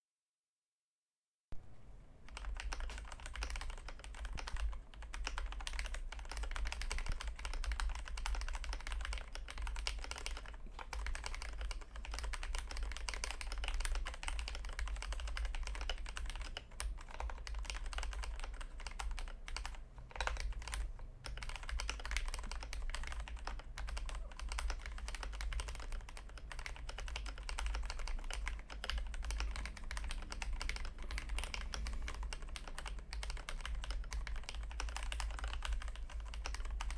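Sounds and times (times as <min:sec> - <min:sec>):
steady low hum: 0:01.6 - 0:36.9
mechanical keyboard typing: 0:02.2 - 0:36.9.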